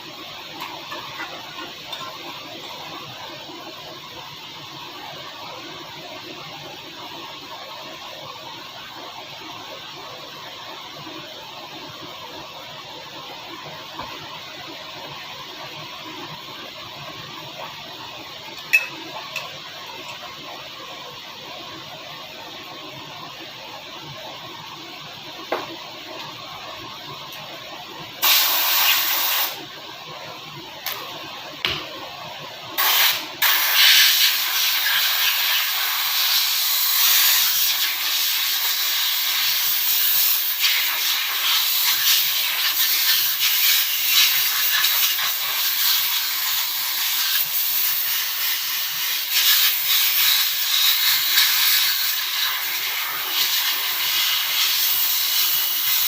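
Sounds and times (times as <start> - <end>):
loud hissing jet: 28.2 - 29.6, 32.8 - 56.0.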